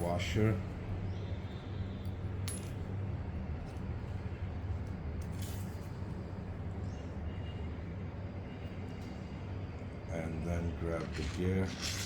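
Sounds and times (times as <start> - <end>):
metal parts scraping: 10.8 - 12.0.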